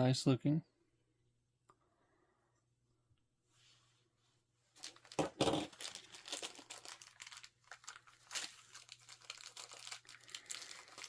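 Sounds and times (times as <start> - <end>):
toy packaging crinkling: 4.8 - 11.0.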